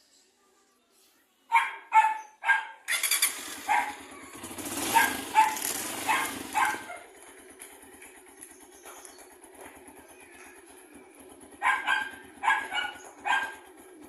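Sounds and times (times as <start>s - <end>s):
dog barking: 1.5s - 2.9s, 3.6s - 4.0s, 4.9s - 7.1s, 11.6s - 13.6s
motorcycle engine running: 2.9s - 14.0s.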